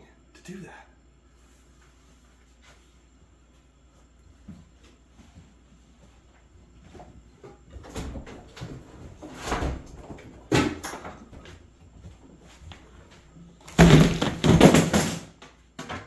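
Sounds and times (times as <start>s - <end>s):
knocks and thuds of handling: 13.7s - 16.0s.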